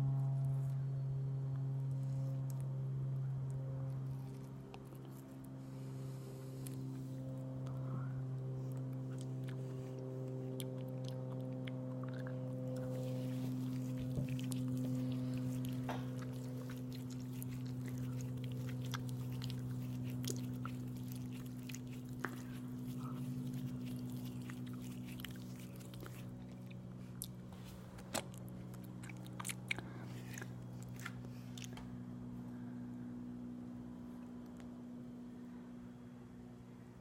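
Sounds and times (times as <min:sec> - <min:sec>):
steady low hum: 0:00.0 - 0:37.0
chewing and biting: 0:01.8 - 0:32.0
wet mouth clicks: 0:10.3 - 0:27.4, 0:28.2 - 0:31.8.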